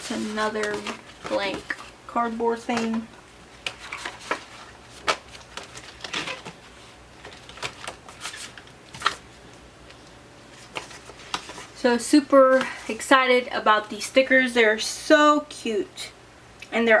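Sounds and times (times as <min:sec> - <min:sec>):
paper rustling: 0:00.0 - 0:09.3, 0:10.5 - 0:11.8.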